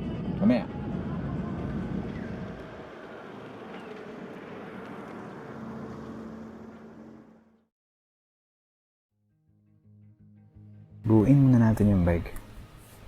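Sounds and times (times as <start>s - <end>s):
car road and engine noise: 0.7s - 7.7s.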